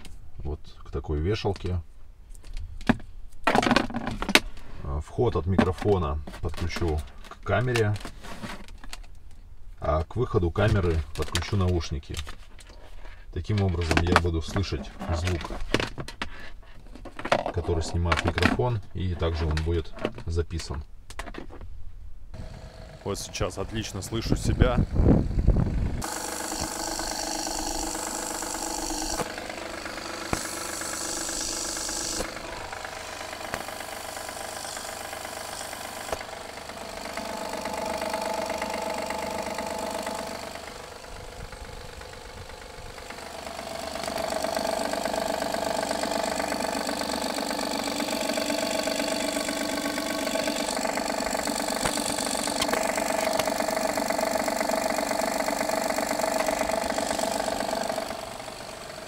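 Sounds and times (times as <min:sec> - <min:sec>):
engine idling with knock: 0:25.3 - 0:59.0.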